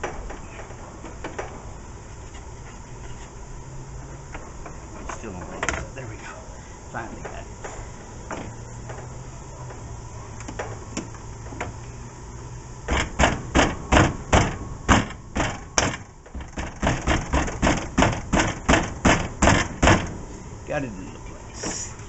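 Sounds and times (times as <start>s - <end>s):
sharp knocks inside car door: 12.9s - 20.2s.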